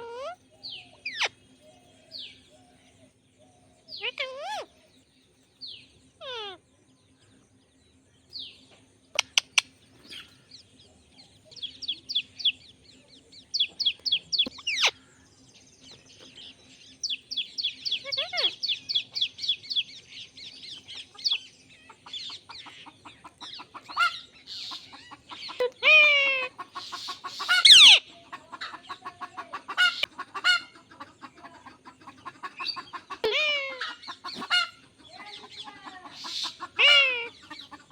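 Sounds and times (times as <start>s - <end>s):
parakeet clicking chatter: 9.2s - 9.7s, 24.7s - 28.1s, 35.4s - 37.9s
parakeet sharp squawks: 27.0s - 28.0s, 36.2s - 37.4s.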